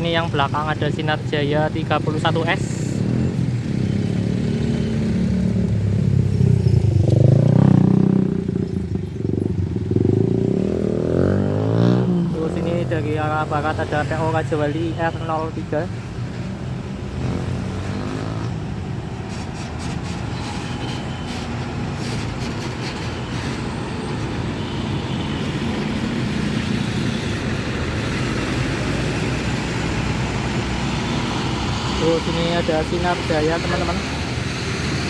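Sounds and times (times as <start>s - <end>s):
busy road traffic: 0.0s - 35.0s
bus diesel engine passing: 16.0s - 35.0s.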